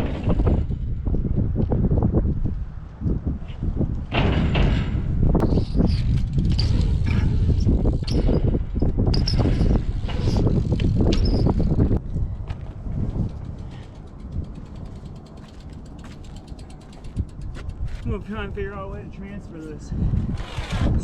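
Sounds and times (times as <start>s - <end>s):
bike rattling on ramps: 0.0s - 2.3s, 3.1s - 18.1s
wind on microphone: 0.0s - 21.0s.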